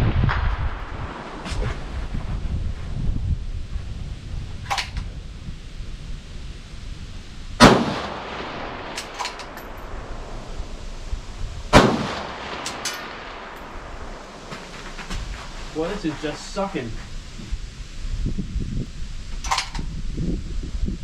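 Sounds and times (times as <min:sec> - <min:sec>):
wind rumbling on microphone: 0:00.0 - 0:21.0
rifle shots with echo: 0:07.6 - 0:09.6, 0:11.7 - 0:14.3.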